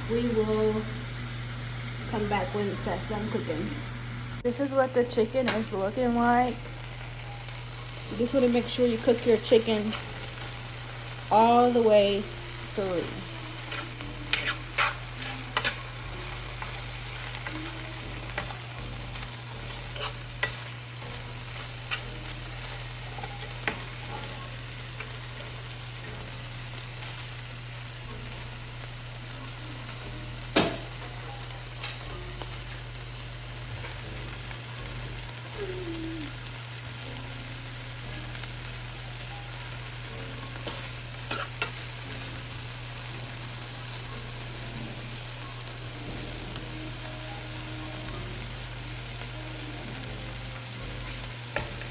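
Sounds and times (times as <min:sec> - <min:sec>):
chicken sizzling in a pan: 0:00.0 - 0:51.9
utensil clicking against pan: 0:13.7 - 0:15.9.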